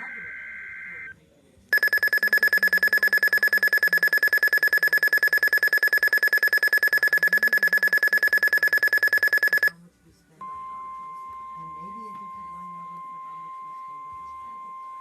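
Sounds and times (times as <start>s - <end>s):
rapid high-pitched alarm beeping: 0.0s - 9.7s.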